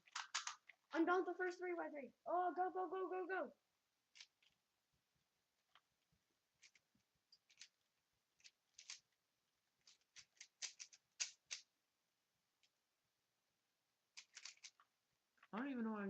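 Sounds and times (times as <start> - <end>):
puzzle cube clicking: 0.0 - 0.8, 4.1 - 4.6, 6.5 - 9.2, 9.8 - 11.7, 14.1 - 14.9.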